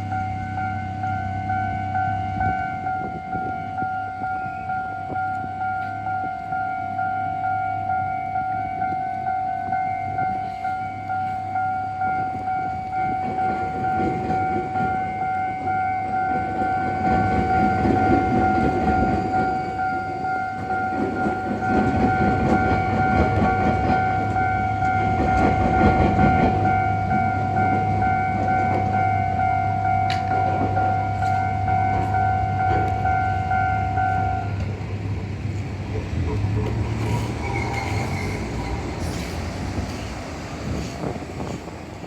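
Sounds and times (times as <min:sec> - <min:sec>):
level crossing alarm ringing: 0:00.0 - 0:34.7
train wheels clattering over rail joints: 0:16.3 - 0:26.8, 0:34.6 - 0:42.0.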